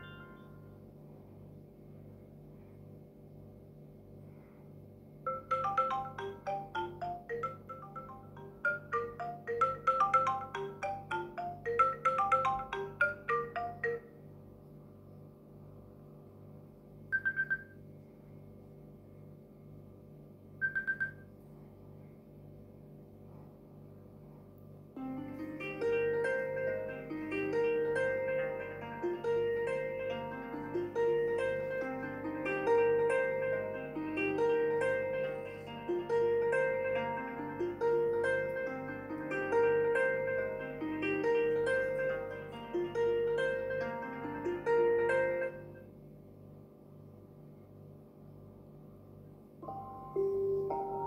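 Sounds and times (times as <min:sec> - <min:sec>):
faint low hum: 0:00.0 - 0:51.0
phone ringtone melody: 0:05.3 - 0:14.2, 0:17.1 - 0:17.8, 0:20.6 - 0:21.3, 0:25.6 - 0:31.0, 0:49.6 - 0:51.0.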